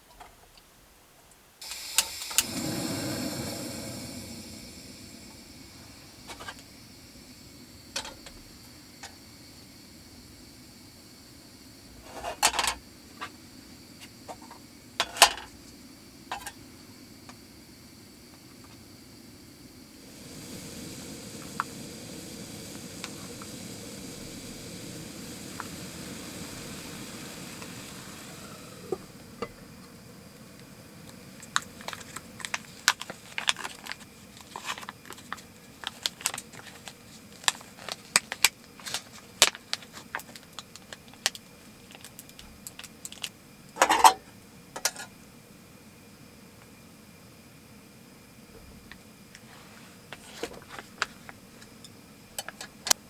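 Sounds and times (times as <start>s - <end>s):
steady hiss: 0.6s - 53.0s
clatter of cooking gear: 12.1s - 12.8s, 14.3s - 15.6s, 16.3s - 16.6s, 31.4s - 45.2s, 50.1s - 53.0s
clinks of cooking utensils: 15.0s - 15.5s, 43.8s - 45.2s.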